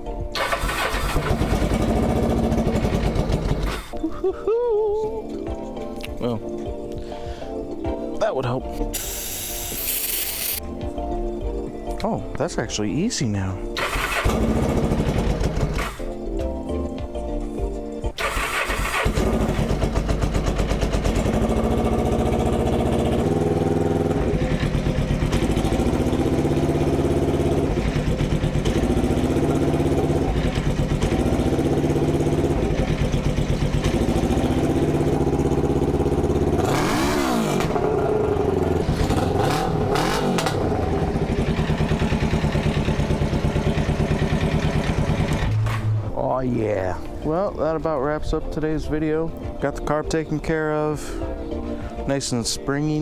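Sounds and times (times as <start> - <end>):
motorcycle engine cranking: 0.3 - 4.0, 13.7 - 16.3, 18.2 - 46.1
motorcycle engine idling: 0.4 - 4.0, 13.8 - 16.1, 18.2 - 46.0
motorcycle engine revving: 0.4 - 4.0, 13.8 - 16.2, 18.2 - 46.2.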